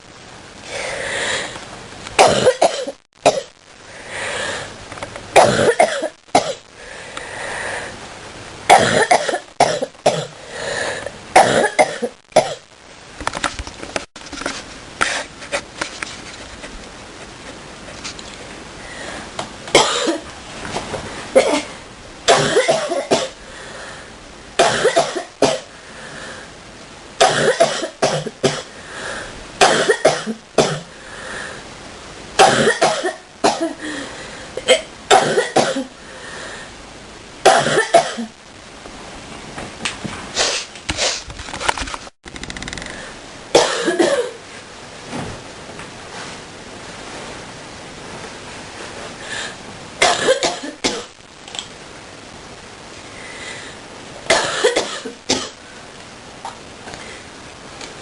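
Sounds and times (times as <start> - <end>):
person coughing deeply: 2.2 - 3.5, 5.4 - 6.6, 8.7 - 10.4, 11.4 - 12.6, 19.8 - 20.3, 21.4 - 23.4, 24.6 - 25.7, 27.2 - 28.7, 29.6 - 30.9, 32.4 - 33.9, 34.6 - 35.9, 37.5 - 38.3, 43.6 - 44.4, 50.0 - 51.1, 54.3 - 55.6.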